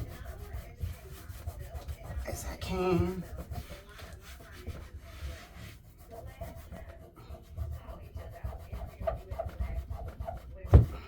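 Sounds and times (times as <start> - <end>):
cloth rubbing a cabinet: 0.0 - 11.0.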